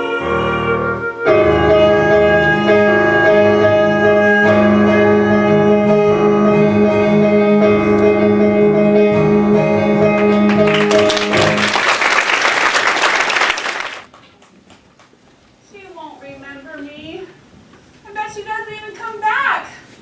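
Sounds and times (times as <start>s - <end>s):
stage musical orchestra chord: 0.0s - 11.8s
audience applause: 9.8s - 14.3s.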